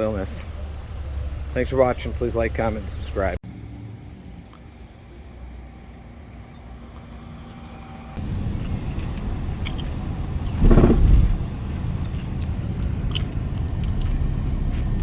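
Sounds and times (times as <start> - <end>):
car road rumble: 0.0 - 15.0
loud burst of noise: 10.6 - 11.4.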